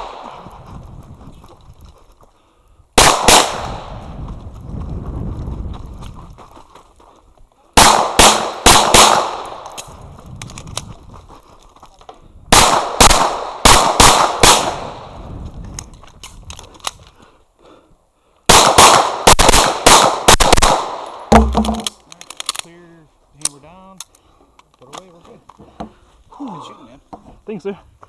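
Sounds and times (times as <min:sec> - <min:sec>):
pistol shots: 0:00.0 - 0:00.4, 0:03.0 - 0:04.0, 0:07.8 - 0:09.8, 0:12.6 - 0:15.1, 0:18.5 - 0:21.9.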